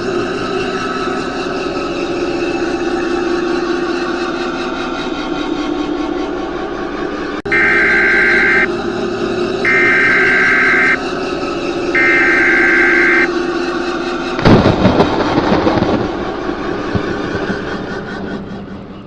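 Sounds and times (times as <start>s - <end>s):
steady low drone: 0.0s - 19.0s
data warble bursts: 9.7s - 11.0s, 12.0s - 13.3s
loud rumbling crash: 14.4s - 18.7s.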